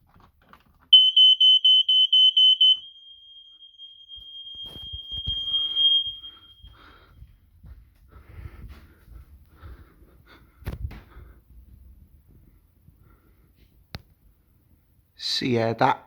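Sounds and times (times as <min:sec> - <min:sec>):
high-pitched pulsing alarm beep: 0:01.0 - 0:06.8
steady alarm tone: 0:01.0 - 0:07.2.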